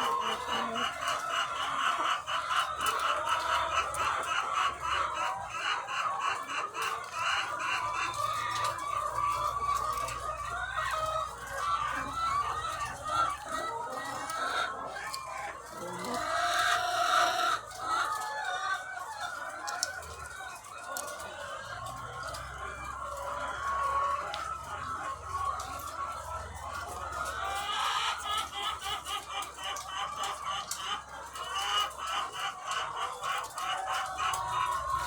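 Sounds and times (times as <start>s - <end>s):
flock of hens clucking: 0.0s - 35.0s.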